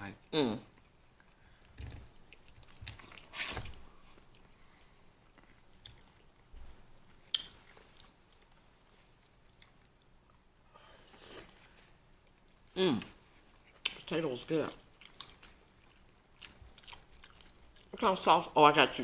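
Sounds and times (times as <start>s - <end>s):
person chewing food: 0.7s - 14.2s, 14.8s - 18.0s
wet mouth smacks: 7.3s - 7.6s.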